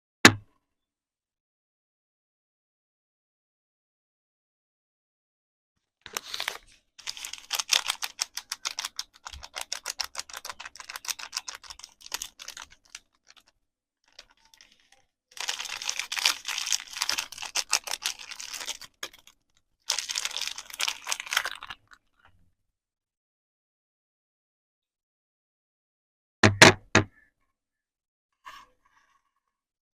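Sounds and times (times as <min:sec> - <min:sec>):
packaging crinkling: 0:06.1 - 0:22.0.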